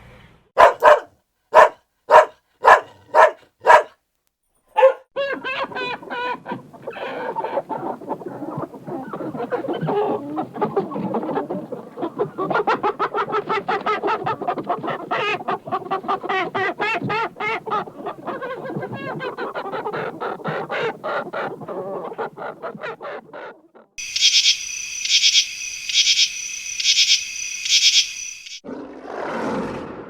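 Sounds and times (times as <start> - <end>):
chickens clucking: 4.8 - 24.5
raspy buzzing chirp: 24.0 - 28.6.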